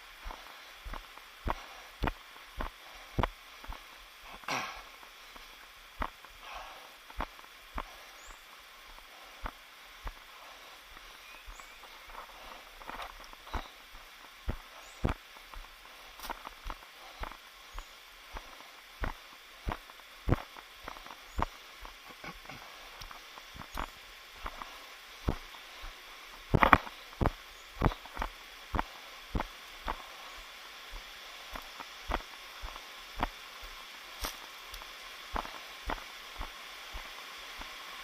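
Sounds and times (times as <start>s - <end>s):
footsteps on rocky ground: 0.0s - 38.0s
steady hiss: 0.0s - 38.0s.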